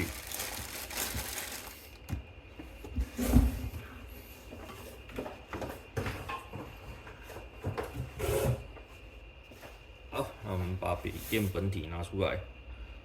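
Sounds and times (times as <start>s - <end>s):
packaging handling noise: 0.0s - 2.2s.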